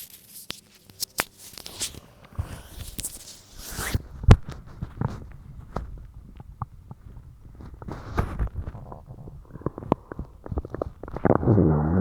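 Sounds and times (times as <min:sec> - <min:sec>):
rustling and scraping: 0:00.0 - 0:11.4
stomach gurgling: 0:03.8 - 0:12.0.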